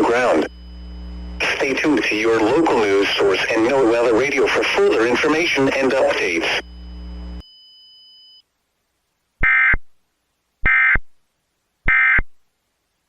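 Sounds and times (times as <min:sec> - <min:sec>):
digital data bursts: 0:01.4 - 0:06.6.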